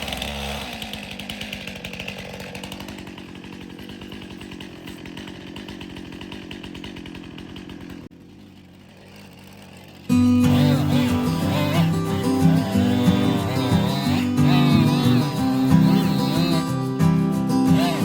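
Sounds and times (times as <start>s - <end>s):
chainsaw idling: 0.0s - 18.0s.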